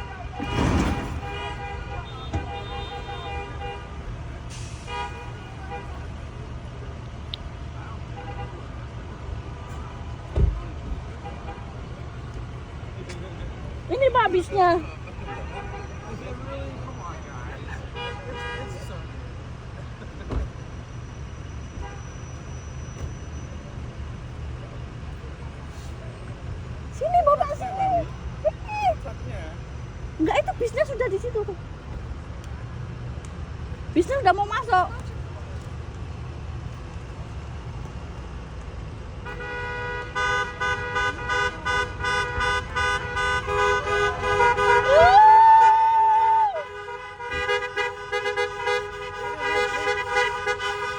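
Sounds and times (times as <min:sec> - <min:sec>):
traffic rumble: 0:00.0 - 0:50.9
loud thump: 0:00.4 - 0:01.4, 0:10.3 - 0:10.7
multi-tone musical air horn: 0:39.2 - 0:45.0, 0:46.5 - 0:50.9.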